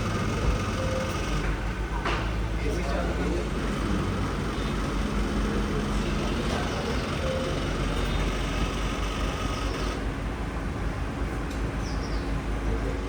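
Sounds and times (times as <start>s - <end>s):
odd noise from timing belt: 0.0s - 2.0s, 2.6s - 10.2s
car engine running: 0.0s - 10.4s.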